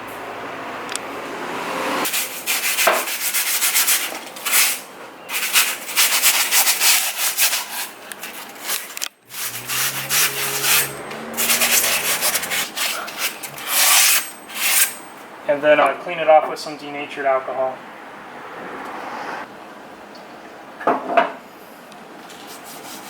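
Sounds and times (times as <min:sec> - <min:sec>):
abrasive sanding metal hub: 0:02.1 - 0:15.2.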